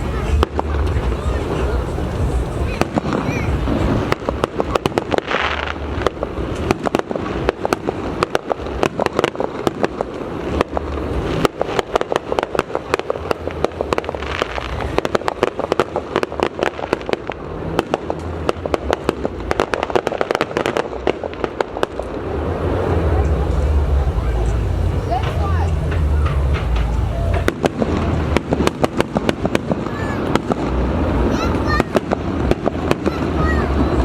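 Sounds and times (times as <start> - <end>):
low rumble: 0.0 - 4.3, 20.9 - 29.0
fireworks bangs and crackles: 0.0 - 34.0
loud firework cracks: 0.0 - 34.0.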